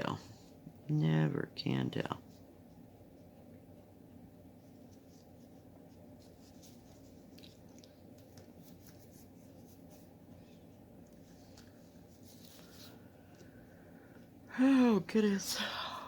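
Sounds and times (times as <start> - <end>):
low room hum: 0.0 - 16.0.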